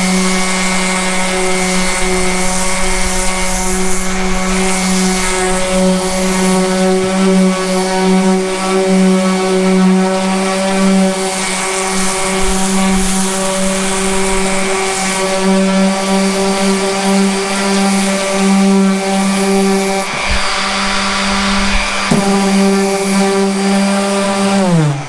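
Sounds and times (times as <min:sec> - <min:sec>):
orbital sander running: 0:00.0 - 0:25.0.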